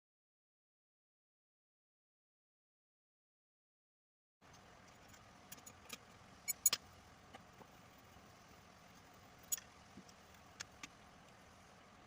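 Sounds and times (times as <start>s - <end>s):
faint background noise: 4.4s - 12.0s.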